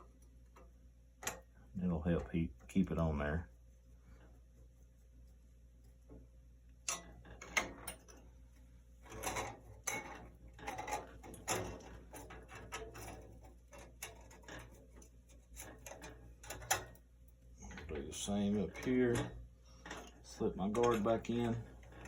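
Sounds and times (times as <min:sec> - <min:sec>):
metal parts clicking and clanking: 0:06.8 - 0:08.3, 0:09.0 - 0:17.0, 0:17.6 - 0:22.0.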